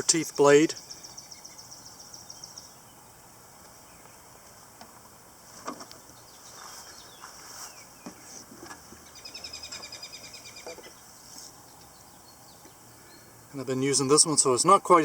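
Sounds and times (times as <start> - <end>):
bird trilling: 9.0 - 11.0.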